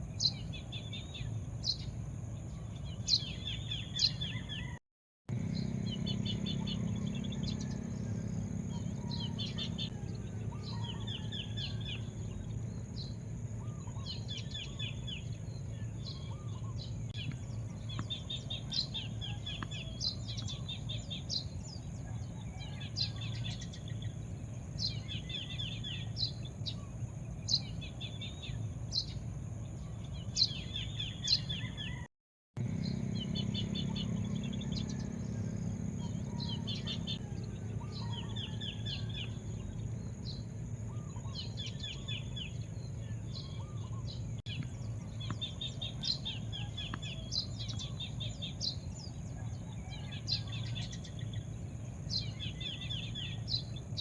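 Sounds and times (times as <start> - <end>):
birds chirping: 0.0 - 54.0
low background hum: 5.3 - 31.9, 32.6 - 54.0.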